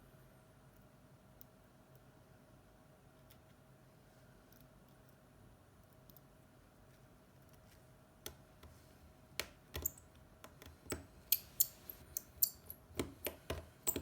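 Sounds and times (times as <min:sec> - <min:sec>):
small clicks and taps of tools: 0:09.4 - 0:14.0.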